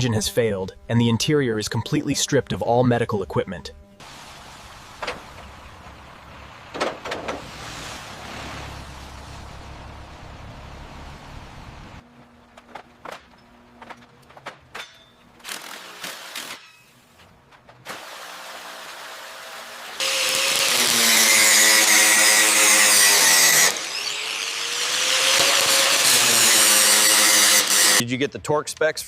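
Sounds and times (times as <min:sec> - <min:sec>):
power tool whining: 0:20.0 - 0:28.0.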